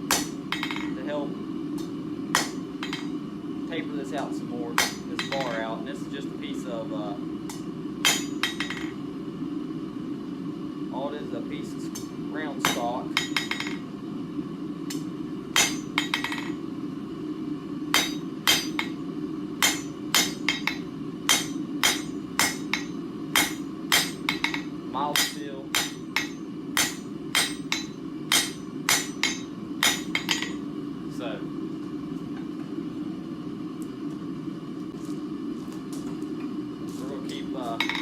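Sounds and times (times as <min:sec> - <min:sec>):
hammer striking metal on anvil: 0:00.0 - 0:01.0, 0:01.8 - 0:03.2, 0:04.8 - 0:05.7, 0:07.5 - 0:09.0, 0:11.9 - 0:13.8, 0:15.6 - 0:16.6, 0:17.9 - 0:19.0, 0:19.6 - 0:30.6, 0:37.8 - 0:38.0
steady low hum: 0:00.0 - 0:38.0.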